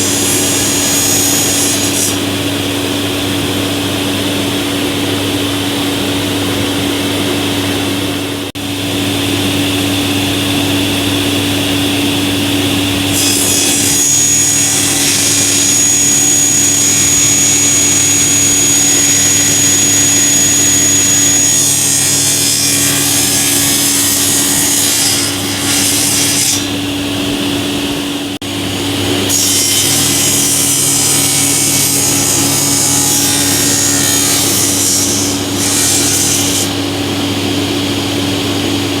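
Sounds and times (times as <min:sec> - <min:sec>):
saw cutting through board: 0:00.0 - 0:02.4, 0:13.0 - 0:26.8, 0:29.1 - 0:36.8
saw blades humming: 0:00.0 - 0:39.0.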